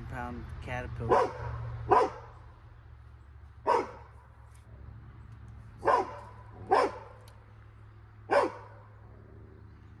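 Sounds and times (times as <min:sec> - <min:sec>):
dog barking: 0:01.1 - 0:02.3, 0:03.6 - 0:04.1, 0:05.8 - 0:07.2, 0:08.3 - 0:08.9.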